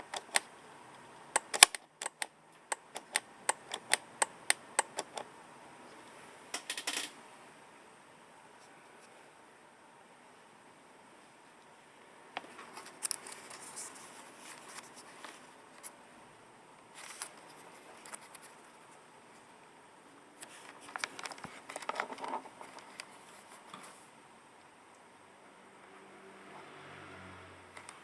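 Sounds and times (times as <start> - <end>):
faint handling clicks: 0.0 - 5.3, 20.4 - 23.8
handling rustles: 12.4 - 15.9, 20.4 - 24.1.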